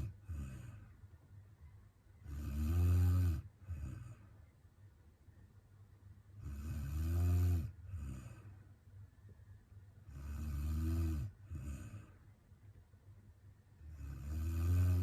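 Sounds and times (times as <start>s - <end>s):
woman snoring: 2.3s - 4.2s, 6.4s - 8.5s, 10.1s - 12.1s, 13.9s - 15.0s
soft breath: 11.3s - 12.5s.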